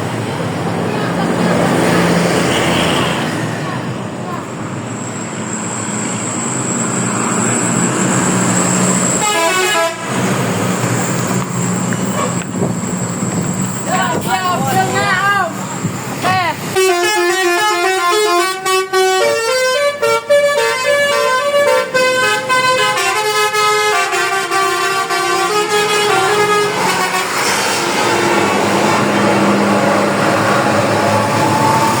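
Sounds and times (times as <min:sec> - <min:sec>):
bus horn playing melody: 0:09.0 - 0:10.4, 0:16.7 - 0:27.7.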